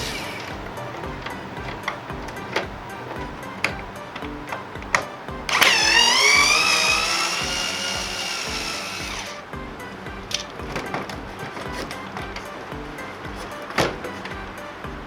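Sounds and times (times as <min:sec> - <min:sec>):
background music with steady beat: 0:00.0 - 0:15.0
electric screwdriver motor running: 0:05.5 - 0:09.4.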